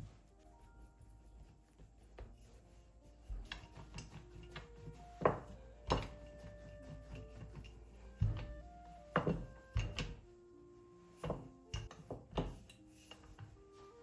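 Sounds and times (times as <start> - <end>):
soft background music: 0.0 - 14.0
dishes and utensils clinking: 3.2 - 10.2, 11.1 - 13.6.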